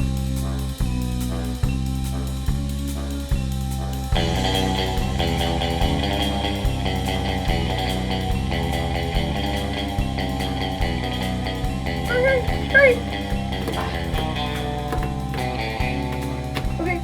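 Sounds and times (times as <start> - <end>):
rock music: 0.0 - 17.0.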